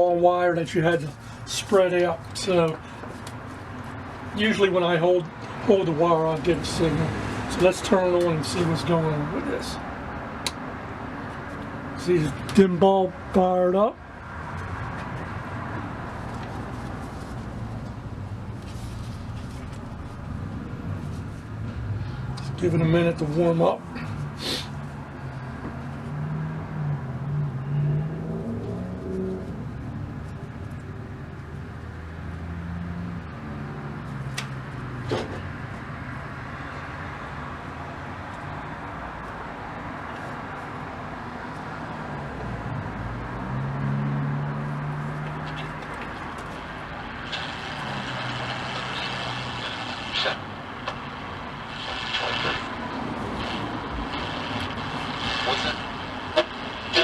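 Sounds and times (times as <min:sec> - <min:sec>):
radio static and hiss: 0:45.4 - 0:57.0
crackles and clicks: 0:47.2 - 0:57.0.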